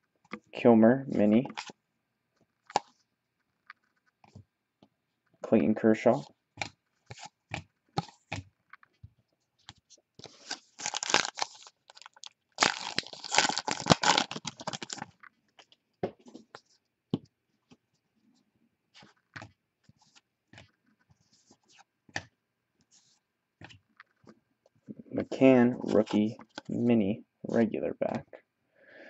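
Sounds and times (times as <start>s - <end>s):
foil wrapper tearing and crinkling: 10.3s - 15.1s.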